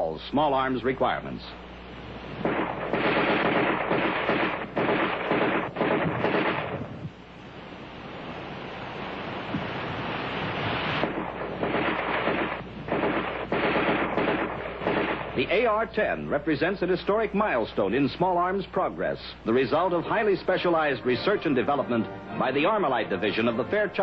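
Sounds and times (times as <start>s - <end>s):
automatic rifle fire bursts: 2.4s - 7.0s, 11.0s - 15.8s.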